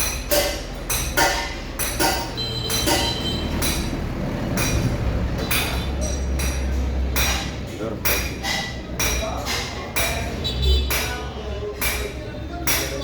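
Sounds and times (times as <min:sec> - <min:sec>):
metal tools clinking on engine parts: 0:00.0 - 0:10.2.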